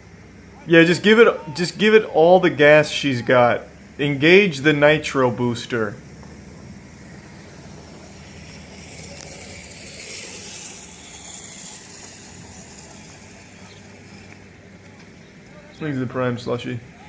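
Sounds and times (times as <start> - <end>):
car engine at full throttle: 5.8 - 15.0.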